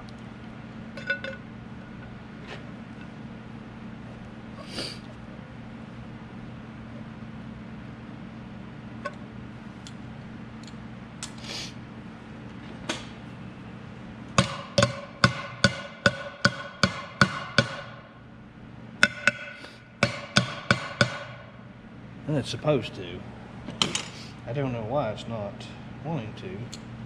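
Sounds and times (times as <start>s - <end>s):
low steady hum: 0.0s - 27.0s
hammer striking metal: 14.4s - 18.0s, 19.0s - 21.5s.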